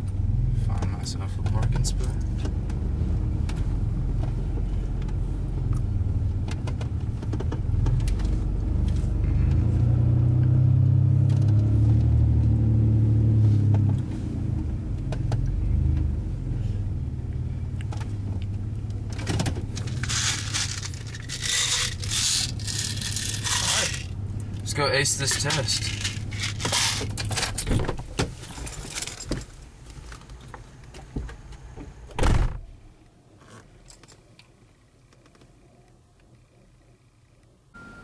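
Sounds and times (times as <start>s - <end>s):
car engine rumble from inside cabin: 0.0s - 38.0s
rustling and scraping: 17.9s - 31.1s.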